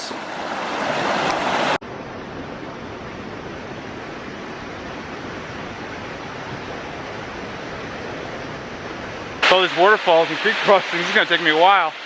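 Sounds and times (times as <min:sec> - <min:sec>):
rushing creek water: 0:00.0 - 0:01.8, 0:09.4 - 0:12.0.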